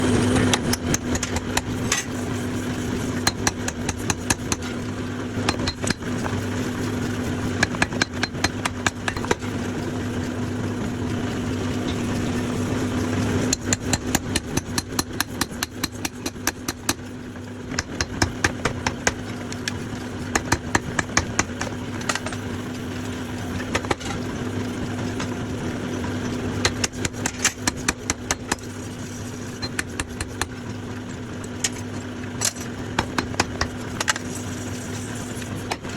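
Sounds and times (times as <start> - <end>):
steady machine hum: 0.0 - 35.9
hammer striking hot steel on anvil: 3.2 - 4.7, 5.5 - 6.1, 7.6 - 9.4, 13.5 - 17.0, 26.6 - 28.7, 32.4 - 34.3.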